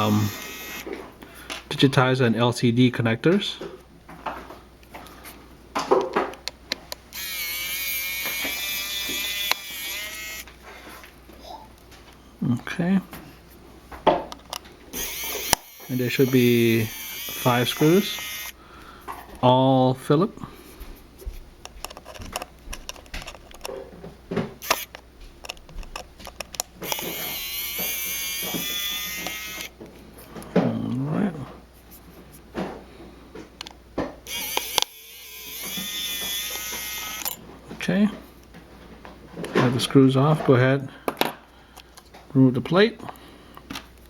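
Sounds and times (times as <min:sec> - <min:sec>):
electric screwdriver whine: 0:00.0 - 0:01.0, 0:07.1 - 0:10.6, 0:15.0 - 0:18.6, 0:24.6 - 0:25.0, 0:26.8 - 0:29.8, 0:34.3 - 0:37.4
tools clicking on phone: 0:07.2 - 0:10.6, 0:15.0 - 0:18.6, 0:24.6 - 0:29.8, 0:34.3 - 0:37.4.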